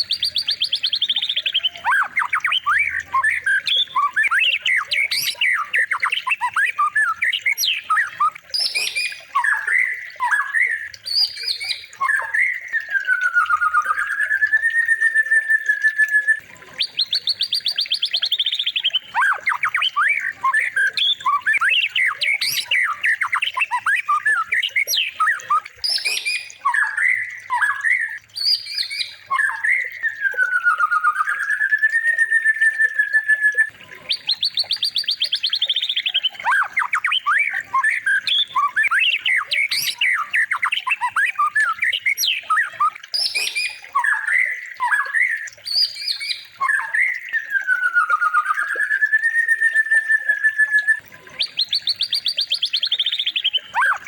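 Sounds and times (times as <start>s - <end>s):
bird squawks and chirps: 0.0s - 12.6s, 18.9s - 31.4s, 35.9s - 47.1s, 50.9s - 54.0s
fast buzzy bird trill: 0.0s - 14.4s, 18.9s - 31.6s, 36.3s - 47.1s
long bird whistle: 0.0s - 17.7s, 18.9s - 34.4s, 36.4s - 54.0s.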